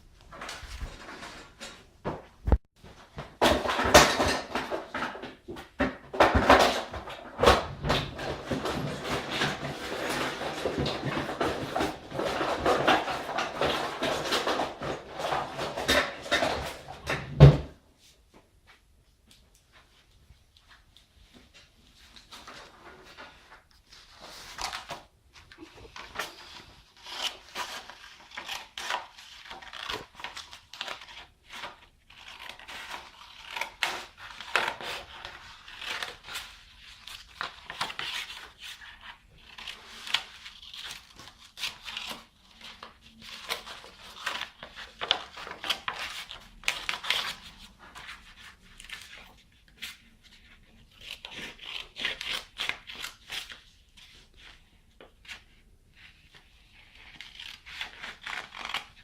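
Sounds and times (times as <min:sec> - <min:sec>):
packaging crinkling and tearing: 0:24.0 - 0:54.6, 0:56.7 - 0:59.0.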